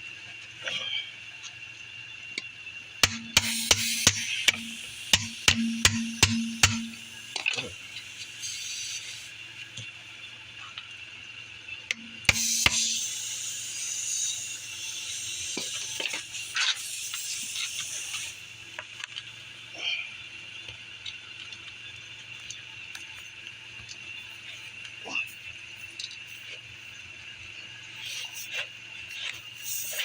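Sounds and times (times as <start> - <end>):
sharp knock: 3.0 - 6.9
tool scraping clicks: 3.0 - 7.6
air hissing from tire: 3.0 - 10.8, 11.9 - 20.6, 24.0 - 30.0.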